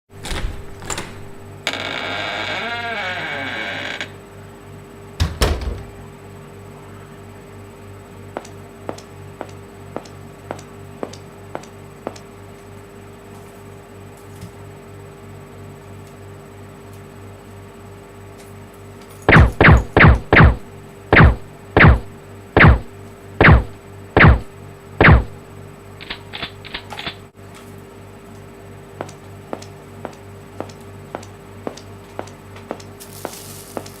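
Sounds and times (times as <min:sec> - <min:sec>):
steady hum: 0:04.0 - 0:34.0
quick zaps dropping in pitch: 0:19.3 - 0:25.4.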